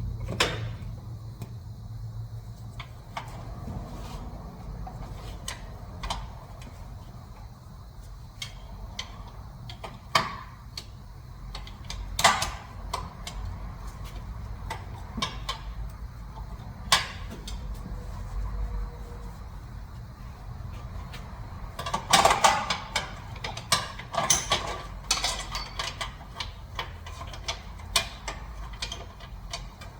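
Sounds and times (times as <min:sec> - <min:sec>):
low steady rumble: 0:00.0 - 0:10.1.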